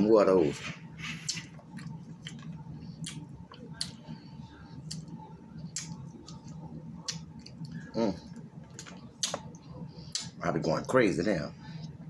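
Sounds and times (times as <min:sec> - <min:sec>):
wet chewing: 0:01.1 - 0:04.0, 0:04.8 - 0:10.4.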